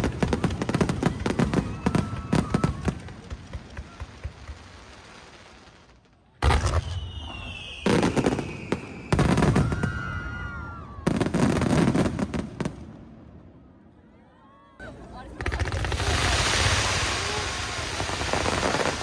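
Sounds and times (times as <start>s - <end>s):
descending whistling tones: 6.7s - 11.1s.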